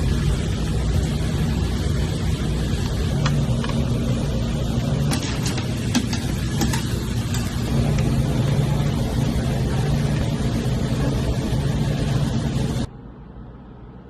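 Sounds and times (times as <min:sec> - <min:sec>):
chicken deep-frying in oil: 0:00.0 - 0:12.9
low hum: 0:00.0 - 0:14.0.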